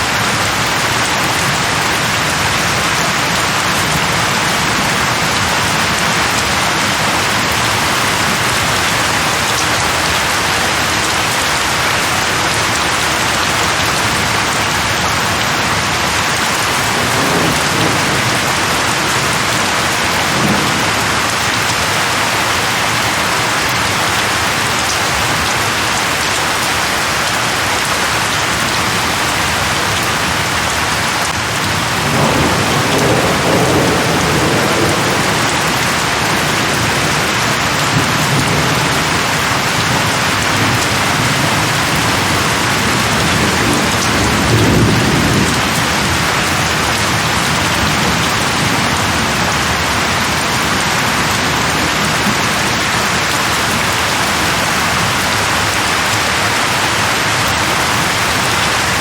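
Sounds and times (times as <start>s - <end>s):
rain falling on leaves: 0.0s - 59.0s
low rumbles of thunder: 16.4s - 21.3s, 31.6s - 52.3s.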